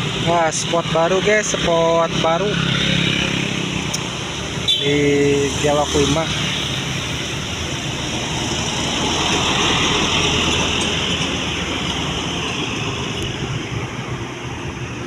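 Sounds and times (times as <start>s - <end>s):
bus engine running: 0.0s - 2.4s, 6.7s - 15.0s
tyre and road noise: 0.0s - 15.0s.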